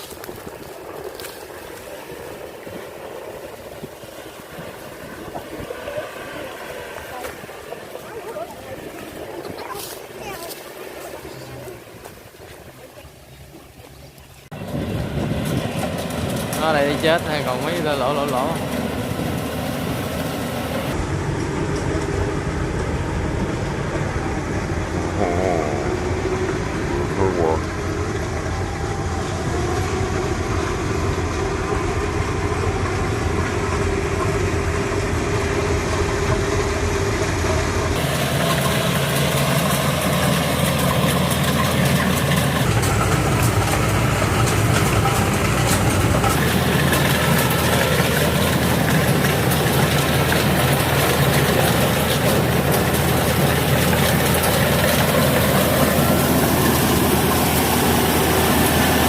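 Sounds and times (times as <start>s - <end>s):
combine harvester diesel engine: 0.0s - 59.0s.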